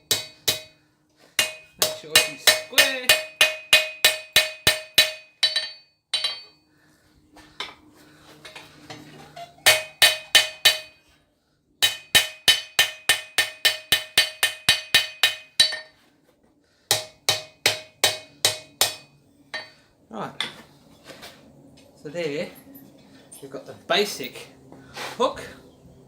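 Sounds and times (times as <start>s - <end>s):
hammer striking steel on anvil: 0.0s - 0.8s, 1.4s - 6.6s, 9.6s - 11.0s, 11.8s - 16.0s, 16.9s - 19.8s.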